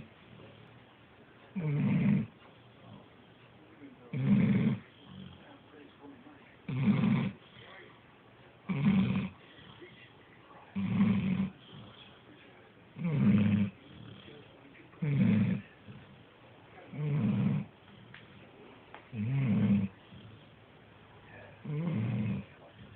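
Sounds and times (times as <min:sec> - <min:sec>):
small pet snoring: 0:01.6 - 0:03.1, 0:04.1 - 0:05.6, 0:06.7 - 0:07.8, 0:08.7 - 0:10.0, 0:10.7 - 0:12.2, 0:13.0 - 0:16.2, 0:16.9 - 0:18.4, 0:19.1 - 0:20.6, 0:21.6 - 0:22.9.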